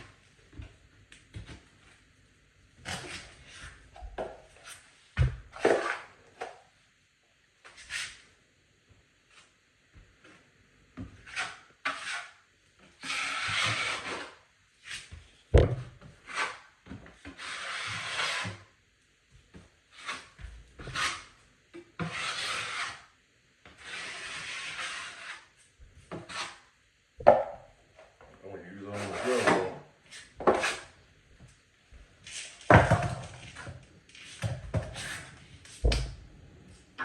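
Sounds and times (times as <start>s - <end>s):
tool scraping drywall: 5.5s - 6.2s, 11.2s - 15.2s, 16.2s - 18.7s, 19.9s - 21.3s, 22.0s - 23.1s, 23.7s - 25.5s, 26.1s - 26.7s, 28.9s - 31.0s, 32.3s - 35.9s.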